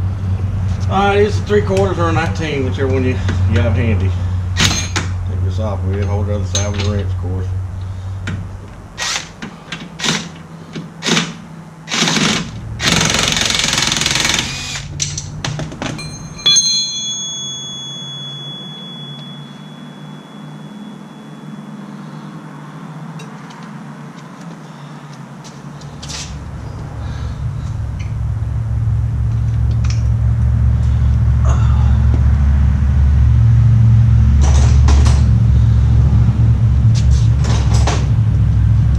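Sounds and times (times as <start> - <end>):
impact wrench hammering: 4.6 - 5.1, 9.0 - 21.4
sharp metallic clink: 16.0 - 22.3.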